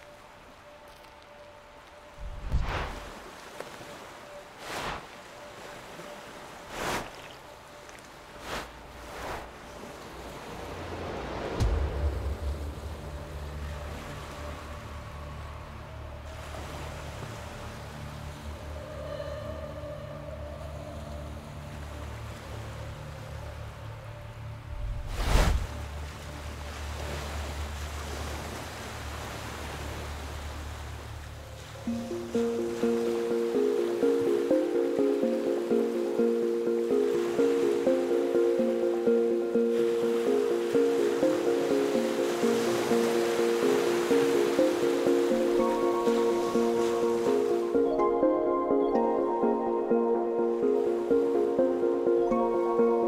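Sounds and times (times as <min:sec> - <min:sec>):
sea waves washing in: 0:01.7 - 0:23.9, 0:24.7 - 0:53.0
wave breaking: 0:02.2 - 0:03.4, 0:04.6 - 0:05.2, 0:10.4 - 0:15.0, 0:24.8 - 0:25.8
low steady rumble: 0:10.8 - 0:16.2.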